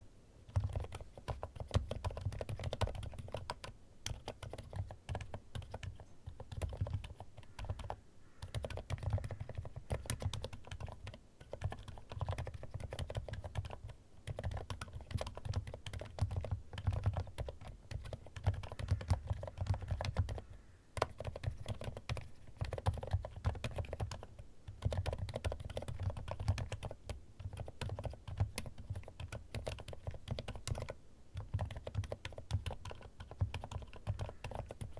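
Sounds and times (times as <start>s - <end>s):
mechanical keyboard typing: 0.5s - 20.4s, 21.0s - 34.9s.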